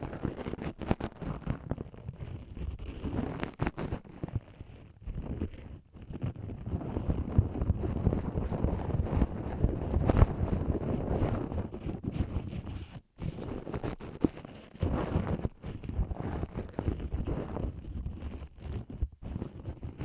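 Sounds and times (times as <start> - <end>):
ear pick scraping and rubbing: 0.0 - 7.0.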